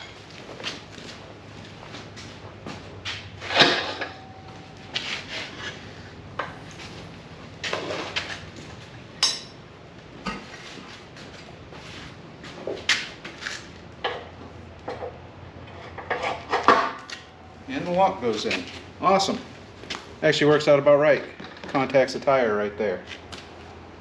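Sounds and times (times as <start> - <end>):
metal clanks and rattles: 3.1 - 4.6
ringing metal clank: 3.5 - 4.6.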